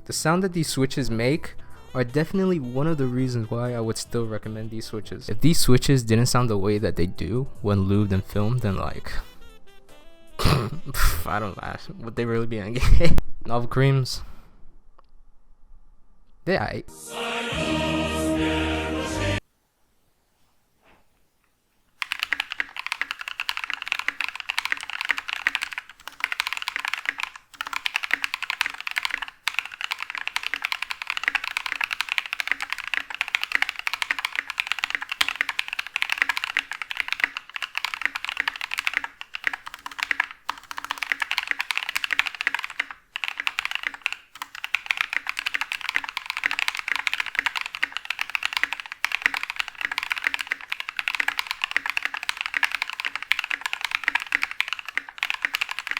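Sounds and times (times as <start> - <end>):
fast typing on mechanical keyboard: 22.0 - 55.9.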